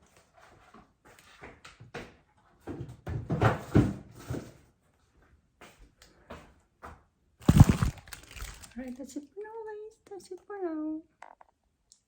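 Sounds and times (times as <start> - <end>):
groceries knocking and clattering: 2.6 - 4.6, 7.4 - 9.0.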